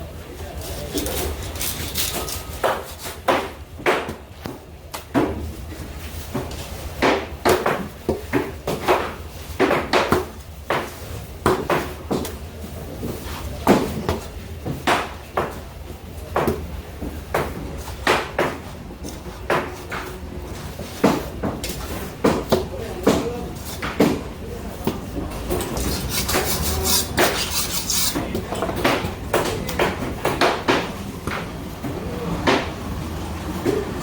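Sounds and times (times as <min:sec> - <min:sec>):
knife chopping through fish: 0:00.9 - 0:04.6, 0:25.6 - 0:31.5.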